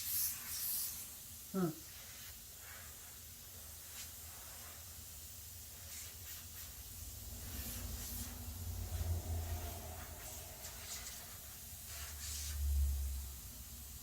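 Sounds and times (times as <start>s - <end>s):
compressed air hissing: 0.0s - 13.2s
low hum: 7.3s - 11.6s.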